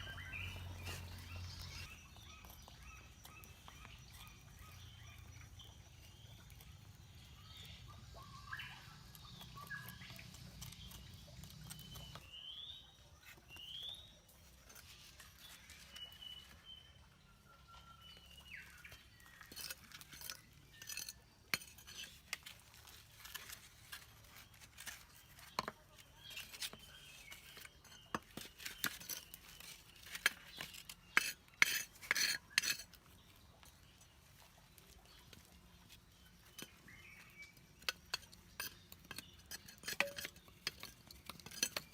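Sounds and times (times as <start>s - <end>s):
birds chirping: 0.0s - 41.9s
hard objects clinking together: 19.2s - 33.0s, 36.4s - 41.9s.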